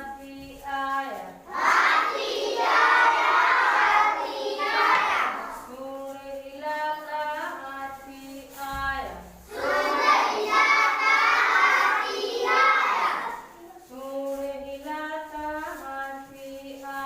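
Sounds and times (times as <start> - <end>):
children singing together: 1.5 - 5.7, 9.4 - 13.9.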